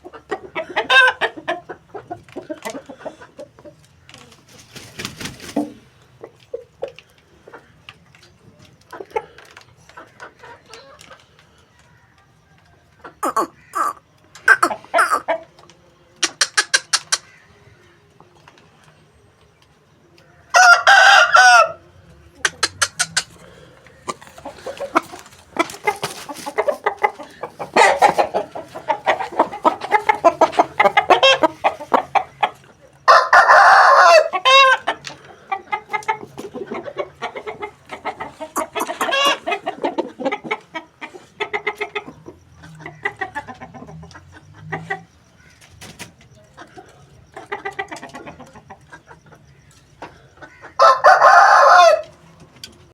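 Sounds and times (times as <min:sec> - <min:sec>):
chickens clucking: 0:00.0 - 0:52.9
rooster crowing: 0:13.2 - 0:15.3, 0:20.5 - 0:21.9, 0:33.0 - 0:34.9, 0:50.6 - 0:52.2.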